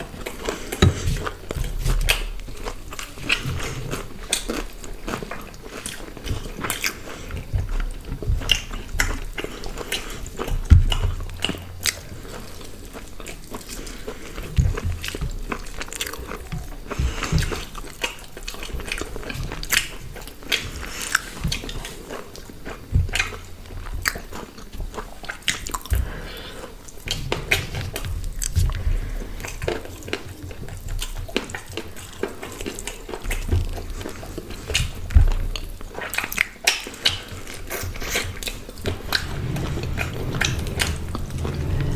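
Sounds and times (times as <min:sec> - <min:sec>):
low thumps: 0:38.8 - 0:41.9.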